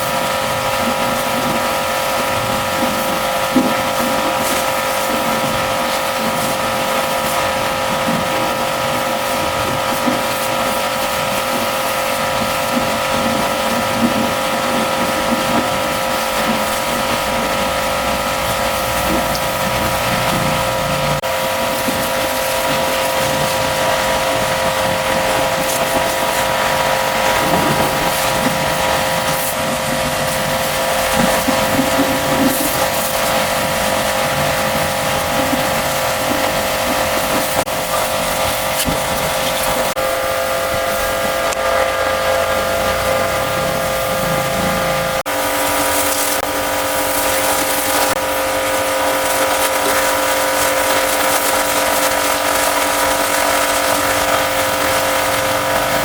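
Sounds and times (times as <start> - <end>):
pressure washer motor whine: 0.0 - 56.0
water jet hissing: 0.0 - 56.0.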